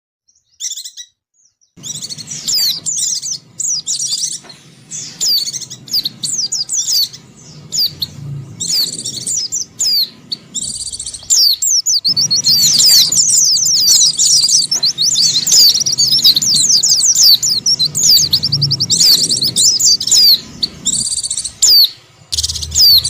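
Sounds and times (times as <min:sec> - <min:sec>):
bird twittering song: 0:00.3 - 0:23.0.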